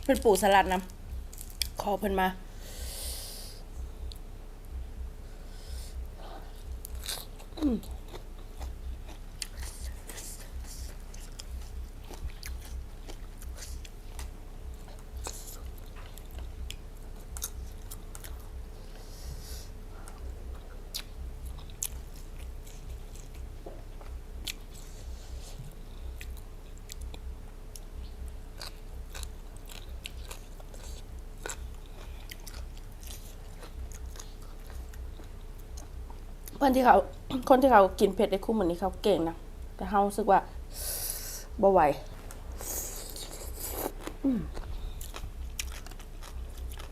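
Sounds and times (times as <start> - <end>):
chewing crunchy vegetables: 6.5 - 18.6, 20.0 - 36.6, 42.1 - 46.9.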